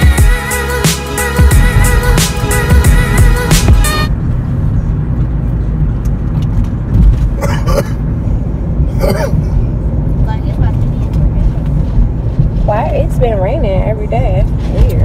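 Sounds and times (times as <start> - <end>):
music: 0.0 - 4.1
engine and road rumble: 0.0 - 15.0.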